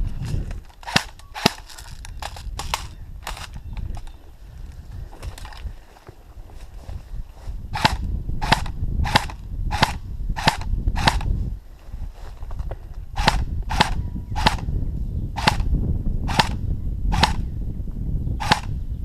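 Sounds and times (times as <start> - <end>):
airsoft rifle single shots: 16.3 - 16.6, 17.2 - 17.4, 18.4 - 18.7.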